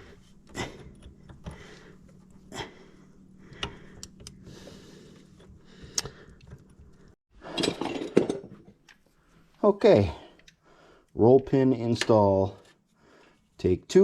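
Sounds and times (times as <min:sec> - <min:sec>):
clattering and handling noise: 0:00.0 - 0:02.5, 0:05.1 - 0:09.6
faint steady hum: 0:00.0 - 0:07.2.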